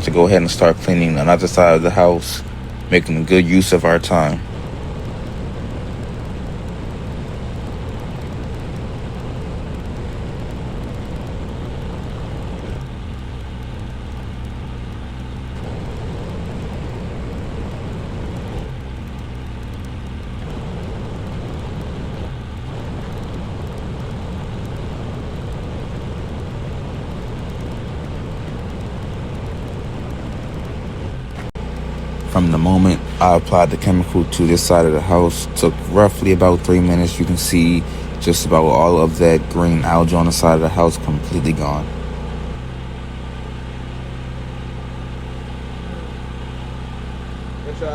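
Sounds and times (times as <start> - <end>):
small engine humming: 0.0 - 47.9
washing pump hissing: 31.6 - 42.0.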